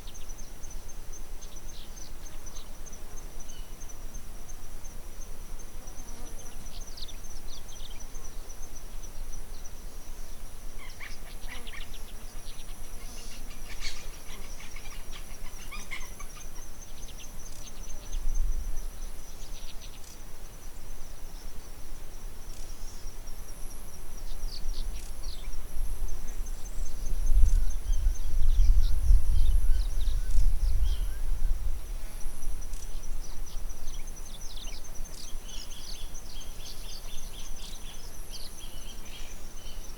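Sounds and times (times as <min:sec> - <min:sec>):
bird chirps: 0:10.8 - 0:18.3.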